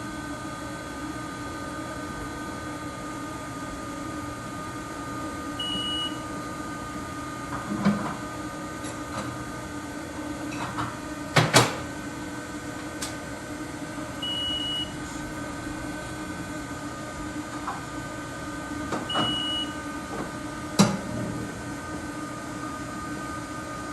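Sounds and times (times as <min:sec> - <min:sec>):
machine humming: 0:11.9 - 0:22.6.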